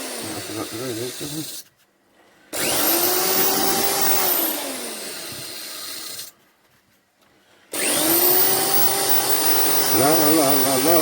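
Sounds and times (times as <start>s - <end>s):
hair dryer running: 2.6s - 5.5s, 7.8s - 11.0s.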